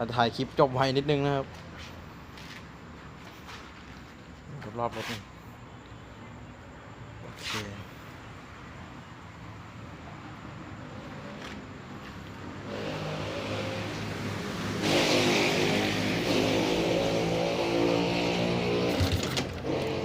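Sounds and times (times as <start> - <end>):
motorcycle engine idling and revving: 10.3 - 20.0.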